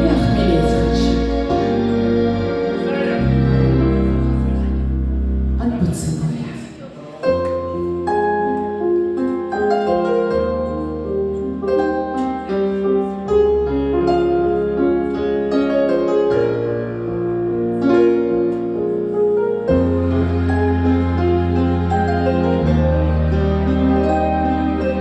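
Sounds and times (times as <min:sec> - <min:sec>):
plucked piano-like notes: 0:00.0 - 0:06.1, 0:07.2 - 0:25.0
held bass note: 0:00.0 - 0:06.5.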